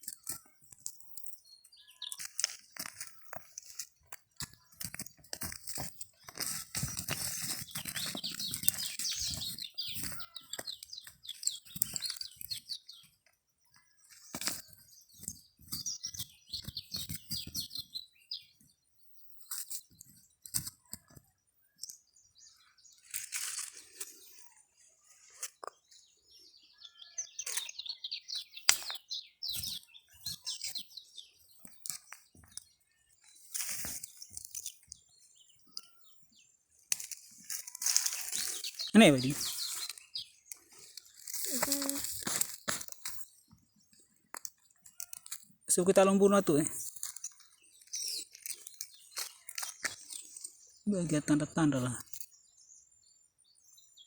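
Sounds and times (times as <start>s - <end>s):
hands scratching through sandy soil: 2.0s - 12.6s, 36.9s - 43.4s.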